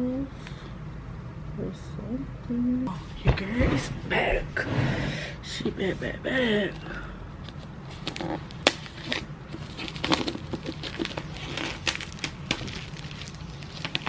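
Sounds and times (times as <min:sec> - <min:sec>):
low steady hum: 0:00.0 - 0:14.0
packaging crinkling and clicking: 0:07.4 - 0:14.0.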